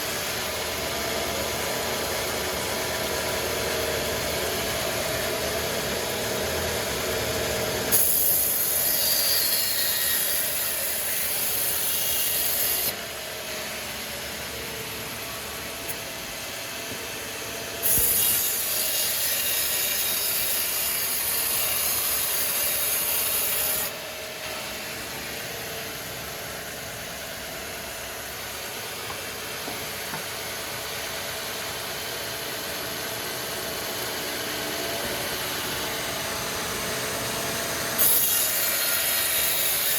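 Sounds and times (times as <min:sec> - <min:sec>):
sawmill saw running: 0:00.0 - 0:39.9
high-pitched hissing of blade cutting: 0:07.9 - 0:13.0, 0:17.8 - 0:24.0, 0:37.9 - 0:39.9.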